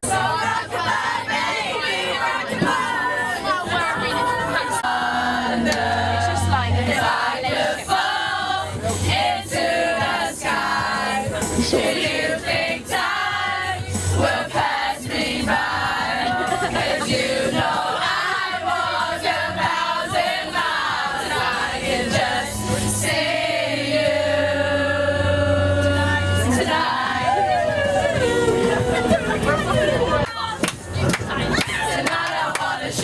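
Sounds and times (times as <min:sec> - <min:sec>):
choir singing: 0:00.0 - 0:30.2, 0:31.7 - 0:33.0.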